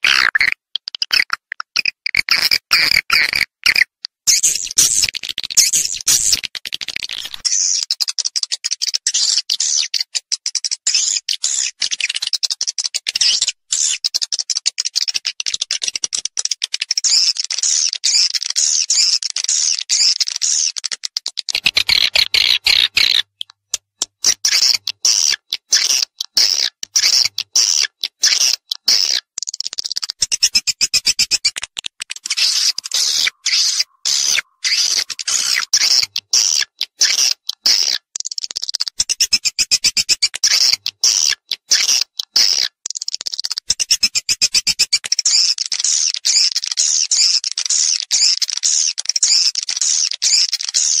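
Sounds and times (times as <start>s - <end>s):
swiftlet twittering chirps: 32.1s - 36.6s.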